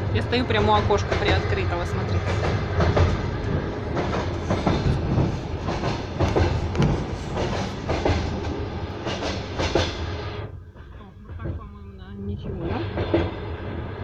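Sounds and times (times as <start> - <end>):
train rumble: 0.0 - 14.0
wheels clicking over rail joints: 2.1 - 10.0.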